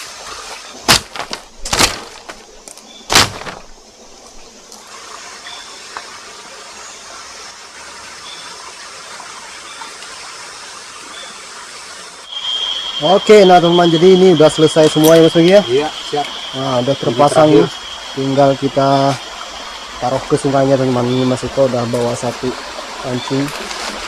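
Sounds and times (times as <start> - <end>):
small stream rushing: 0.0 - 24.0
sharp knocks or clatters: 3.1 - 3.7
faint high peeps: 12.3 - 20.2.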